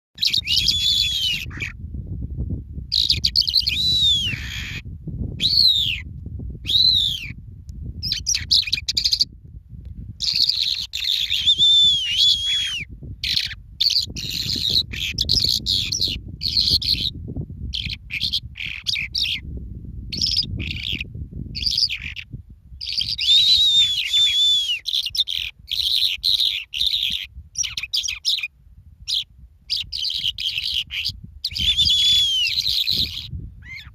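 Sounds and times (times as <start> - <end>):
birds chirping: 0.2 - 1.8, 2.9 - 4.8, 8.0 - 9.3, 10.2 - 17.1, 17.7 - 19.4, 20.1 - 28.5, 29.1 - 33.9.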